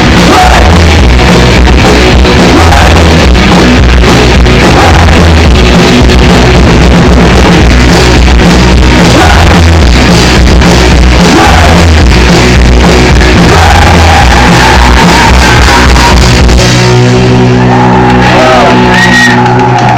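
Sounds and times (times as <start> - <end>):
person shouting and singing: 0.0 - 3.5, 4.4 - 5.5, 8.8 - 10.0, 10.9 - 12.2, 13.1 - 16.6, 17.4 - 19.9
loud rock music: 0.0 - 19.9.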